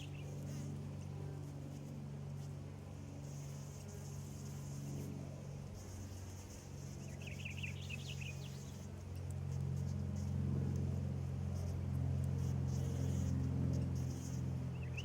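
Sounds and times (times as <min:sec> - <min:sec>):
bumblebee buzzing: 0:00.0 - 0:15.0
bird twitter: 0:07.2 - 0:08.8, 0:14.7 - 0:15.0.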